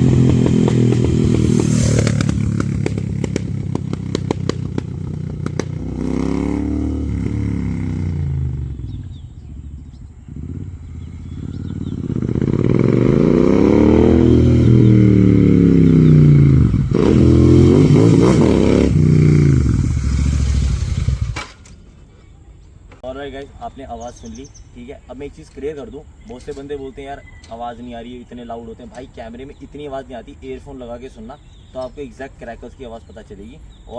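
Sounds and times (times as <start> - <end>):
exhaust crackles and pops: 0.0 - 10.5
motorcycle engine revving: 0.0 - 21.8.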